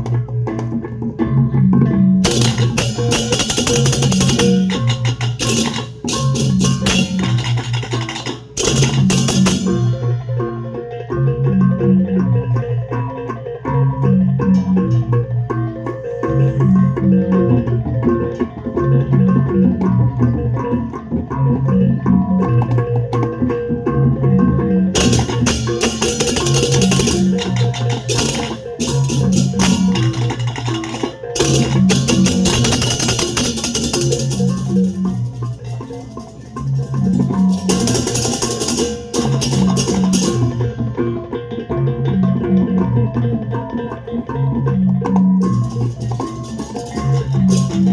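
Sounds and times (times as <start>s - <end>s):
gamelan on bronze gongs: 0.0s - 47.9s
cymbals clashing: 2.2s - 10.7s, 24.9s - 41.2s, 45.4s - 47.9s
sharp percussive strokes: 2.2s - 10.8s, 24.9s - 41.7s, 45.0s - 47.9s.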